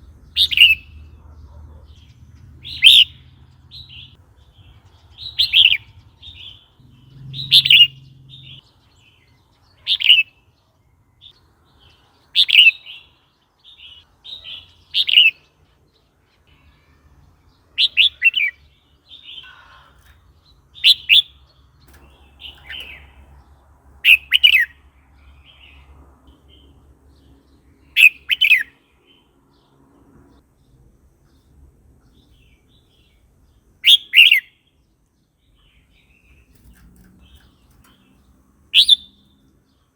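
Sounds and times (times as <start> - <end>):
bird singing: 0.0 - 39.9.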